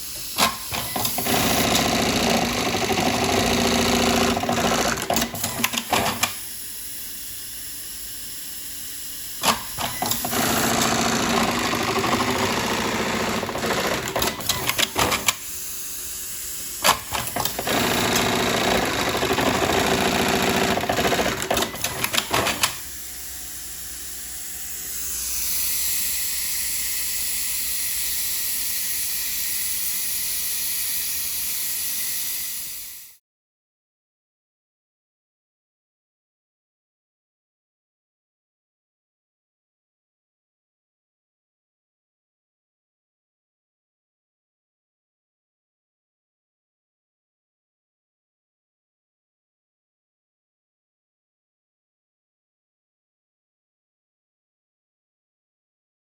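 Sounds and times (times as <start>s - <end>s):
buttonhole machine stitching: 0.0s - 6.4s, 9.4s - 15.6s, 16.8s - 22.9s
sharp machine clicks: 0.1s - 6.5s, 9.0s - 15.5s, 16.4s - 22.9s.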